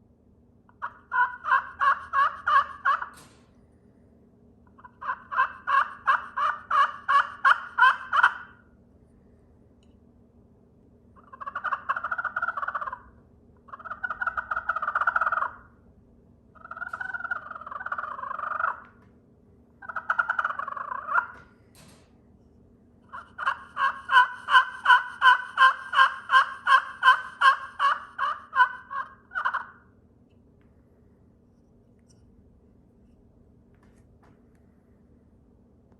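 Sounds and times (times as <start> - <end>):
slate turkey call: 0.7 - 3.1, 4.8 - 8.6, 11.2 - 15.7, 16.6 - 19.0, 19.8 - 21.4, 23.1 - 29.9.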